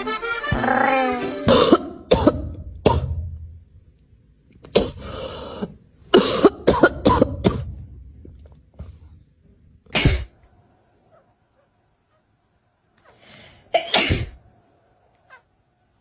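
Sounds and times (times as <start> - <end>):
person coughing: 0.5 - 3.2, 4.7 - 5.2, 6.2 - 7.7.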